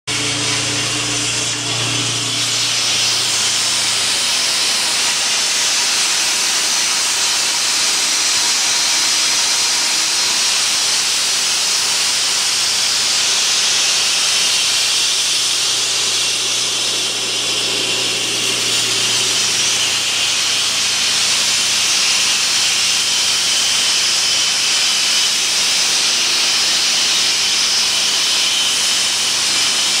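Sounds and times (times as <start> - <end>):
engine hum: 0.1 - 5.0, 15.5 - 21.0
concrete saw cutting: 0.1 - 30.0.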